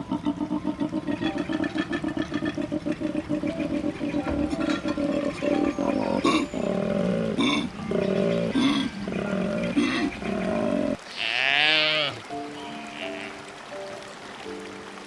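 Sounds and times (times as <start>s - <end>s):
large animal growling: 0.0s - 11.0s.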